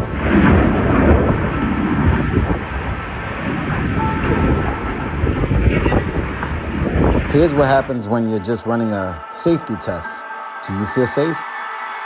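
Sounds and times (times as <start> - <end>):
wind buffeting microphone: 0.0 - 8.6.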